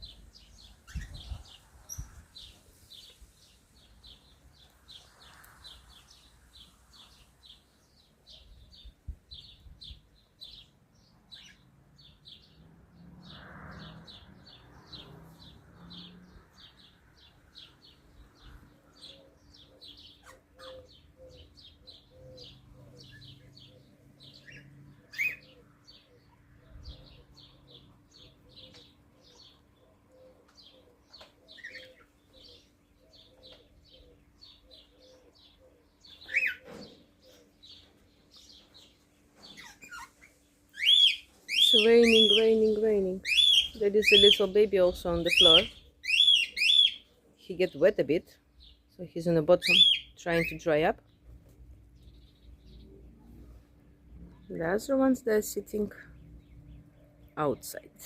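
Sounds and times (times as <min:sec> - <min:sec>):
parrots chirping: 0:19.9 - 0:23.4, 0:24.2 - 0:26.1, 0:36.2 - 0:36.7, 0:39.5 - 0:42.6, 0:43.2 - 0:44.5, 0:45.3 - 0:47.2, 0:49.6 - 0:50.6.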